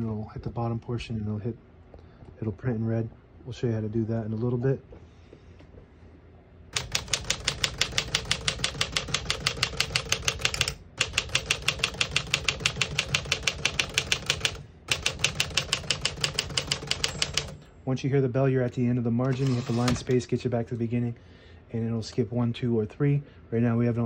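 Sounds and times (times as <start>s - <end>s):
typewriter key strikes: 6.8s - 17.6s.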